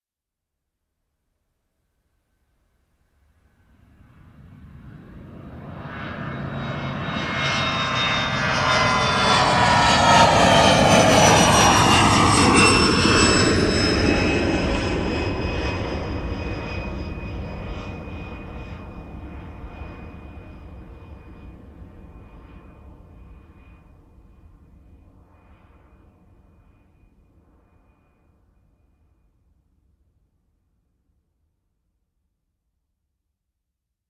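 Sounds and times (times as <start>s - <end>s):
jet airliner passing overhead: 3.6s - 23.8s.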